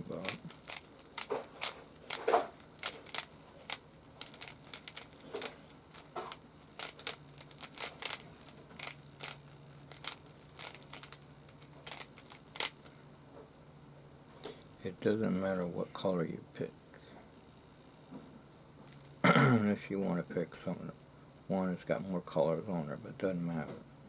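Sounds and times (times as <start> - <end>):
puzzle cube clicking: 0.1 - 12.8.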